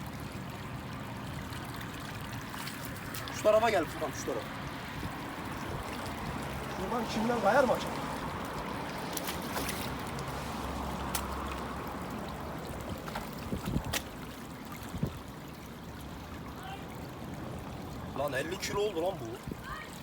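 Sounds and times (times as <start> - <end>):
mud squelching underfoot: 2.3 - 3.8, 4.5 - 15.0.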